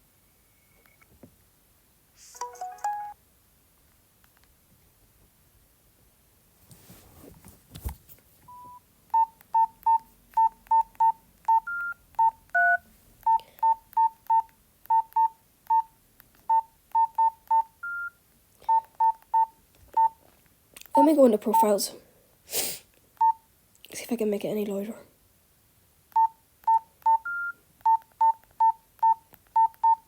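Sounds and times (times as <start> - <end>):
phone keypad beeps: 8.5 - 15.9, 16.5 - 20.2, 21.5 - 21.8, 23.2 - 23.4, 26.2 - 30.0.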